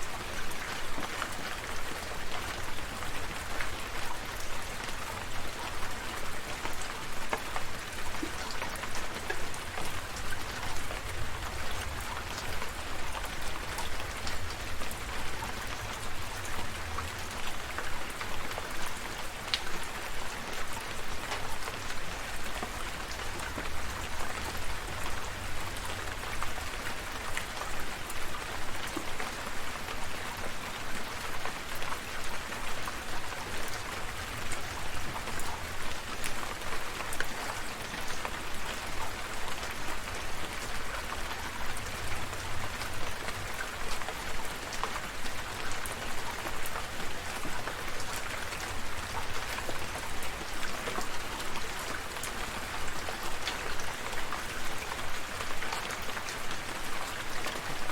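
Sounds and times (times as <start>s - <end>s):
steady rain falling: 0.0s - 57.9s.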